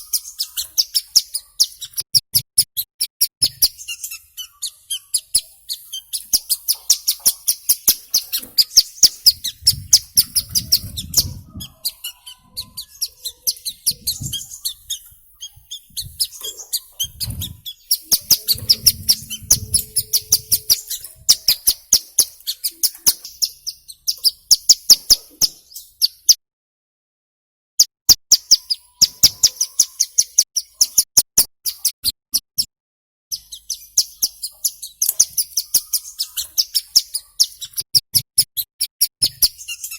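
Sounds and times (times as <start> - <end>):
bird sharp high chirps: 0.0 - 26.4, 28.3 - 32.0, 33.3 - 39.9
faint low rumbles: 9.3 - 11.9, 17.0 - 21.6.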